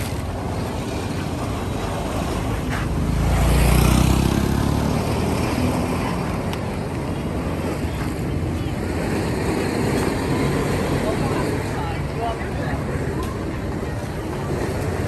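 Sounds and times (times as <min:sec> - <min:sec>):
street noise: 0:00.0 - 0:15.0
vehicle engine passing by: 0:00.9 - 0:06.6.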